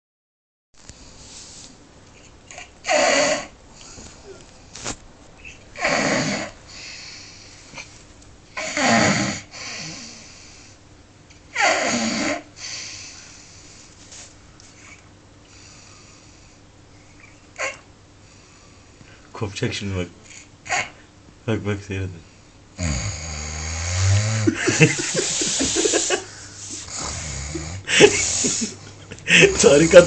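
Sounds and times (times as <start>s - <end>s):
soft breathing: 0.9s - 2.3s, 3.7s - 5.6s, 12.6s - 17.4s, 25.1s - 30.0s
person snoring heavily: 2.8s - 3.6s, 5.8s - 7.4s, 8.6s - 10.4s, 11.6s - 13.2s, 22.8s - 30.0s.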